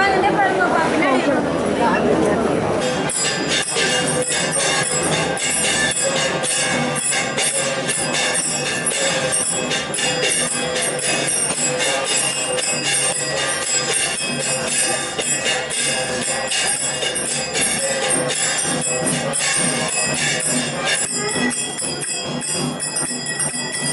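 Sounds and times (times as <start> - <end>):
music: 2.6 - 23.9
bells jangling: 2.8 - 23.9.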